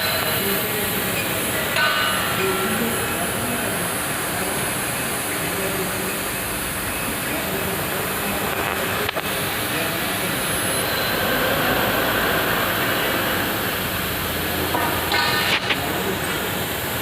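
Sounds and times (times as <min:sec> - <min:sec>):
welding arc crackling: 0:00.0 - 0:17.0.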